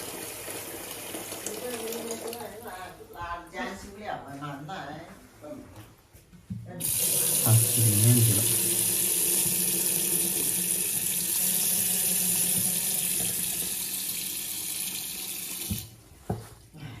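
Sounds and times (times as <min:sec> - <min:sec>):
water gushing from a tap: 0:00.0 - 0:02.7, 0:06.8 - 0:16.0.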